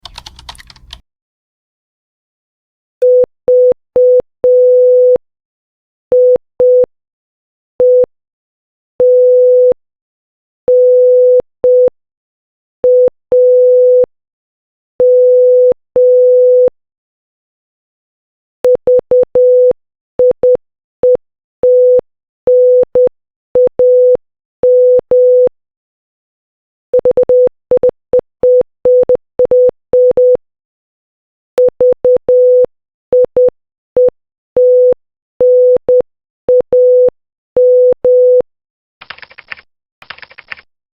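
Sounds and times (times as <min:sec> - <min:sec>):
morse code beeps: 0:27.0 - 0:30.4, 0:31.6 - 0:38.4.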